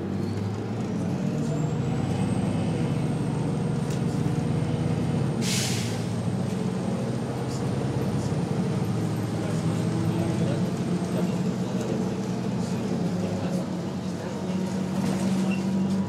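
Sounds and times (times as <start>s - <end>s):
bus diesel engine pulling away: 0.0s - 16.0s
air brake hiss: 5.4s - 6.1s.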